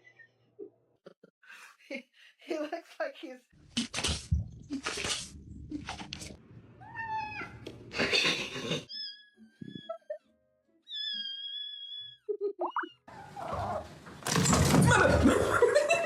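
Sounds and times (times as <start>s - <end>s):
cat meowing: 6.8s - 7.6s.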